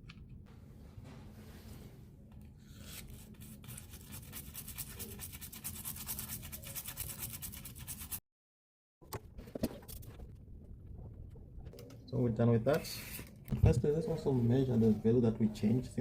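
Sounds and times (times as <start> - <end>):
scratchy rubbing on circuit board: 3.6 - 8.2.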